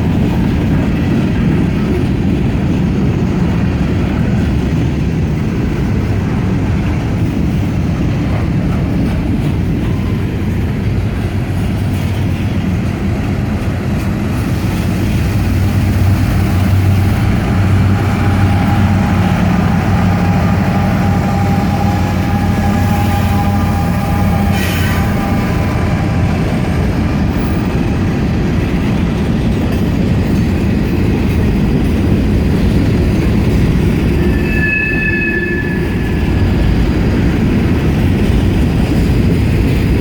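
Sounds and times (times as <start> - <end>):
freight train wheels rumbling: 0.0 - 40.0
steady tone: 34.0 - 37.8.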